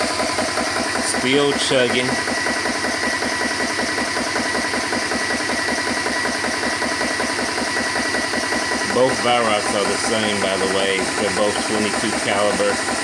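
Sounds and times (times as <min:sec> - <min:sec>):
air compressor pump chugging: 0:00.0 - 0:13.0
high-pitched compressor whine: 0:08.6 - 0:13.0.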